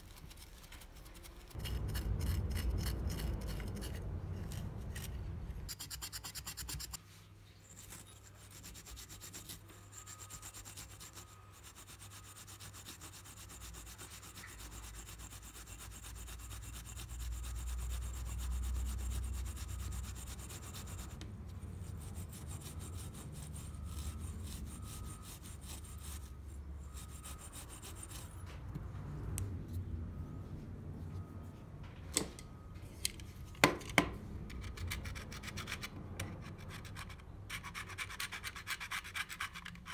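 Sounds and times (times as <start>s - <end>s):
rubbing and scraping: 0.0s - 28.6s
low hum: 1.5s - 5.7s, 16.4s - 35.3s.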